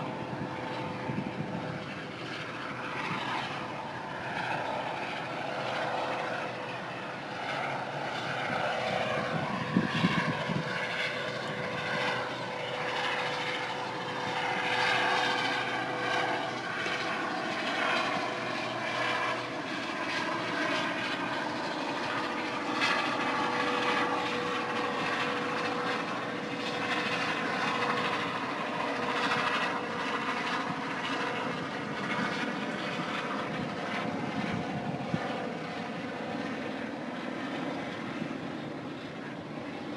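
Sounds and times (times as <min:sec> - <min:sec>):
helicopter rotor and engine: 0:00.0 - 0:39.9.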